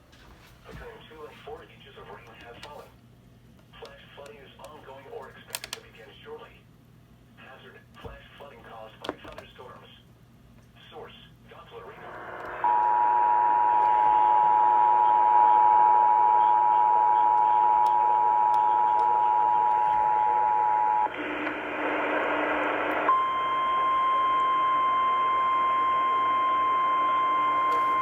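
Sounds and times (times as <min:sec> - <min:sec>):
radio hiss: 0:00.6 - 0:03.0, 0:03.7 - 0:06.6, 0:10.7 - 0:14.4, 0:18.3 - 0:23.1
steady warning alarm tone: 0:12.0 - 0:21.1, 0:23.0 - 0:28.0.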